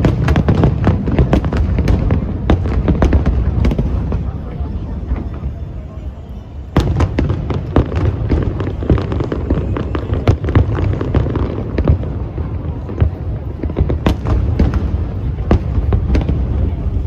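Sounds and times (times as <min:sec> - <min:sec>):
fireworks bangs and crackles: 0:00.0 - 0:17.0.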